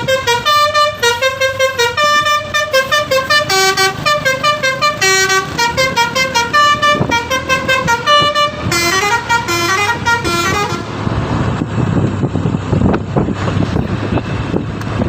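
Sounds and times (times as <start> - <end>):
bus horn playing melody: 0.0 - 11.1
bus engine: 0.0 - 15.0
road noise: 0.0 - 15.0.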